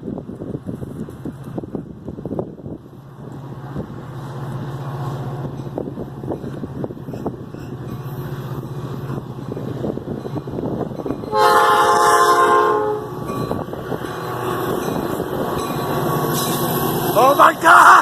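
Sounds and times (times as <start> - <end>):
diesel engine rumbling: 0.0 - 18.0
locomotive horn blast: 11.2 - 13.3.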